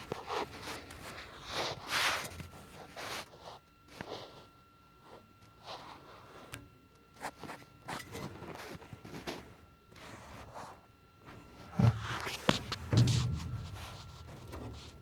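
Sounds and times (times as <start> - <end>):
heavy thump: 11.8 - 15.0.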